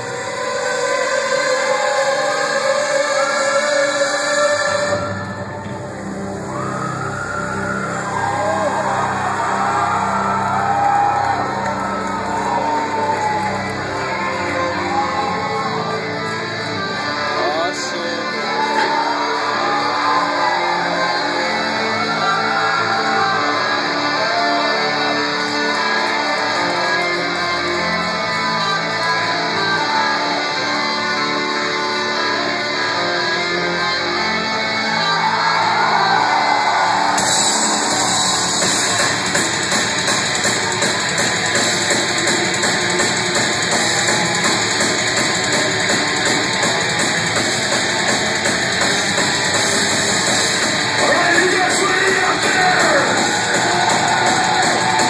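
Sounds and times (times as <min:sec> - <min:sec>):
loud distorted guitar band: 0:03.6 - 0:55.0
rapid cymbal hits: 0:37.2 - 0:55.0.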